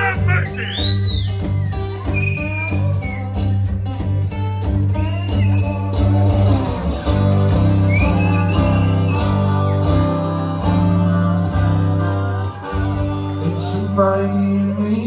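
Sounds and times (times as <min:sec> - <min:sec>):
bass line: 0:00.0 - 0:15.0
guitar chords: 0:00.0 - 0:15.0.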